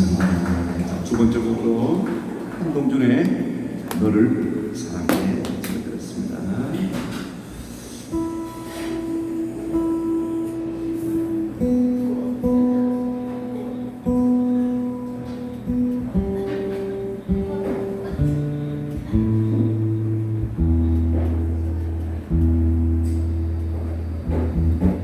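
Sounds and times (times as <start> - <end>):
acoustic guitar chords: 8.1 - 25.0
deep bass line: 18.2 - 25.0.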